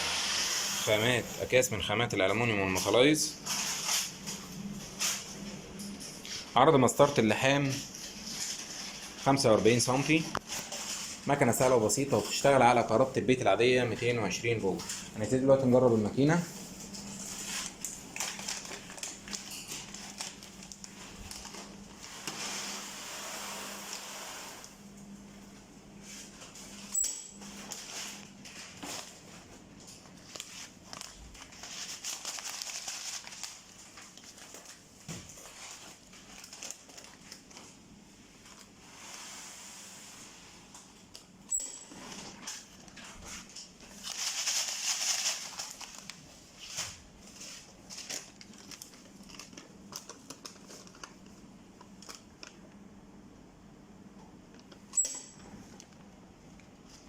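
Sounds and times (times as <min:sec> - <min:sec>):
foil bags crinkling: 0:02.7 - 0:05.4, 0:16.2 - 0:22.4, 0:27.6 - 0:37.8, 0:42.4 - 0:52.7.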